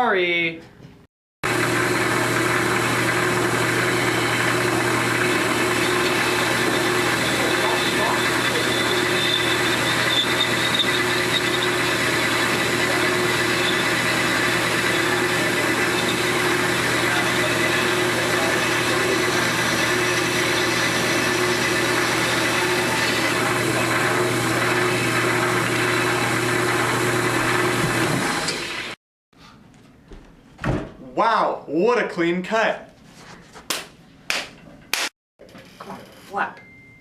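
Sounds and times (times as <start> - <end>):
band saw cutting wood: 1.4 - 29.0.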